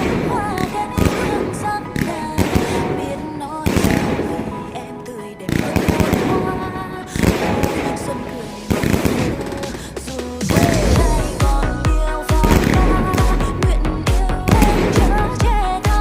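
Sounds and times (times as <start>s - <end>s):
music with sung melody: 0.0s - 16.0s
fireworks banging and crackling: 5.5s - 6.6s, 7.2s - 11.0s.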